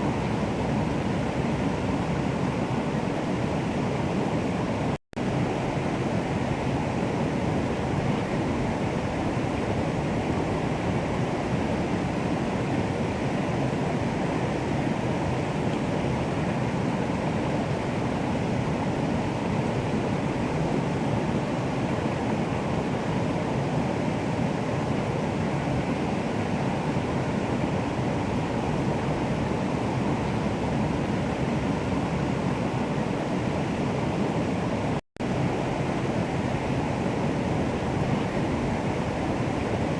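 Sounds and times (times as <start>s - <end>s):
running water rushing: 0.0s - 39.9s.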